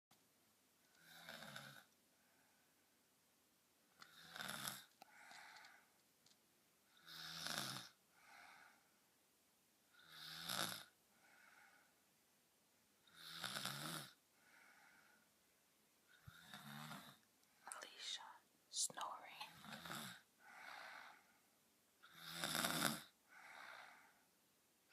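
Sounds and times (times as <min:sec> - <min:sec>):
soft breath sound: 0:00.9 - 0:03.2, 0:04.0 - 0:06.2, 0:06.8 - 0:09.2, 0:11.0 - 0:12.2, 0:14.3 - 0:24.4
girl snoring deeply: 0:01.0 - 0:01.9, 0:04.0 - 0:04.9, 0:06.9 - 0:08.8, 0:09.9 - 0:11.9, 0:13.1 - 0:15.2, 0:16.1 - 0:17.2, 0:19.5 - 0:21.3, 0:22.0 - 0:24.2.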